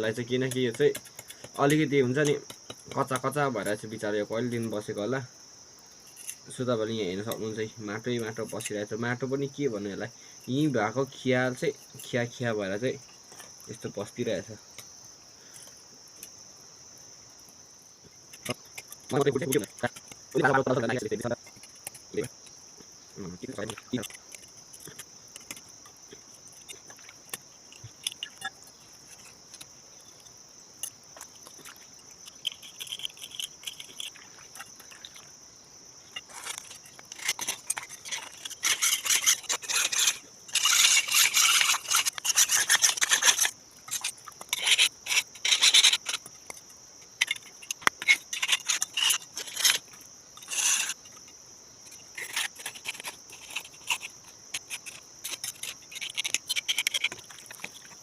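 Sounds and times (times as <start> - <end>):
crickets chirping: 0.0 - 58.0
blade rasping on a stone: 36.1 - 46.6, 47.2 - 51.2, 51.9 - 57.9.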